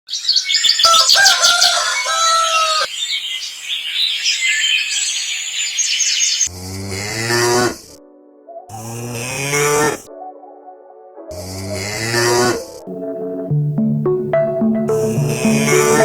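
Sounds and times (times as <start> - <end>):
birds chirping and calling: 0.1 - 7.5
cow mooing: 6.5 - 7.8, 8.7 - 10.1, 11.4 - 12.6.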